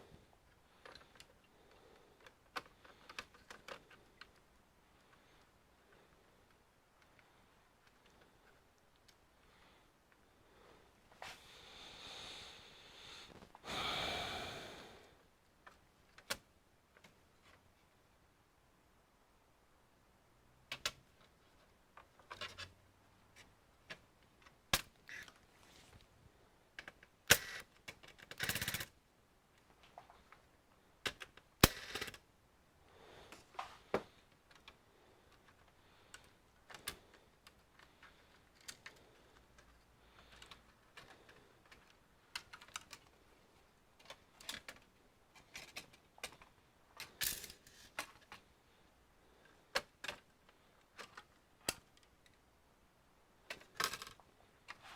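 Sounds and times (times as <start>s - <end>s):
plastic and metal parts clicking: 0.5s - 5.6s, 15.6s - 17.6s, 20.7s - 22.8s, 26.8s - 29.0s, 29.6s - 32.3s, 33.3s - 43.3s, 43.9s - 48.5s, 49.4s - 52.4s, 53.5s - 54.9s.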